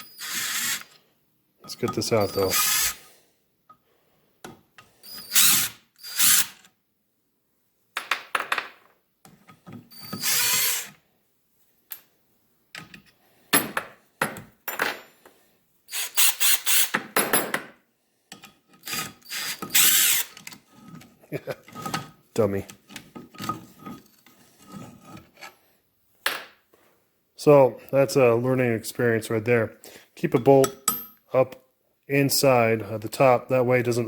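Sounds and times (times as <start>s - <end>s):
power tool loosening bolts: 0.0s - 1.0s, 1.7s - 3.0s, 5.0s - 6.7s, 9.9s - 11.0s, 15.9s - 17.0s, 18.4s - 21.0s.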